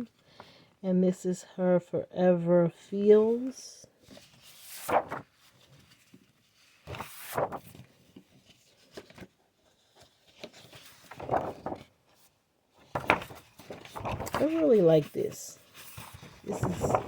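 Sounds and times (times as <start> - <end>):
paper rustling: 4.0 - 17.0.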